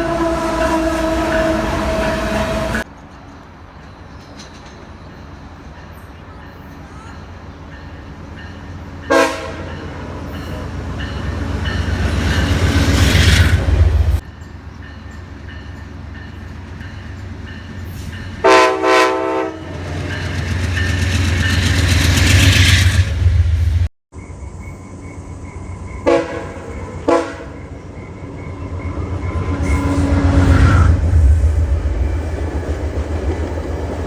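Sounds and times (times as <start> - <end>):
locomotive horn blast: 0.0 - 2.8, 9.1 - 9.9, 18.4 - 19.9, 26.0 - 27.6
train rumble: 0.0 - 34.0.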